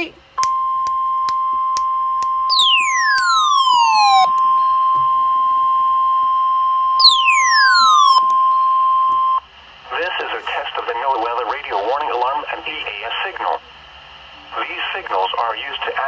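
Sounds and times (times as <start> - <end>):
high-pitched alarm tone: 0.4 - 9.4
tone sweeping down: 2.5 - 4.4, 7.0 - 8.3.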